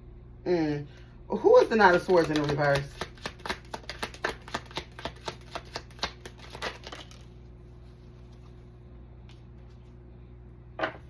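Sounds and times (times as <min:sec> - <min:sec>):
faint steady hum: 0:00.0 - 0:11.0
cards being shuffled by hand: 0:01.6 - 0:08.6.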